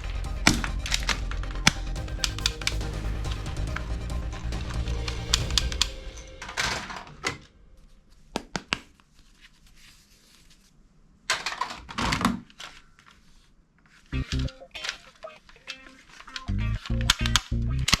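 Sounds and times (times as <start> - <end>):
toy guns clicking and rattling: 14.6 - 18.0.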